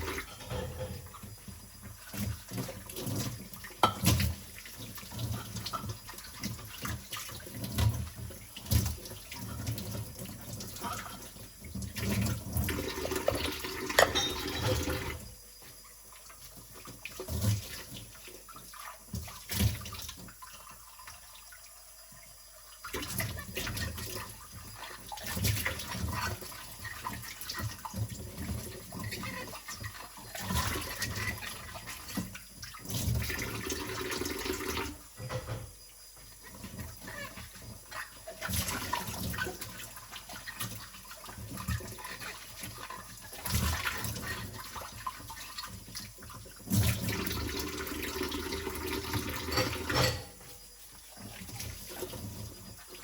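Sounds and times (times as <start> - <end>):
dishes knocking and clinking: 0.0 - 1.3, 3.8 - 4.2, 13.9 - 15.2, 35.2 - 35.8, 49.4 - 50.6
water splashing in a sink: 0.0 - 53.0.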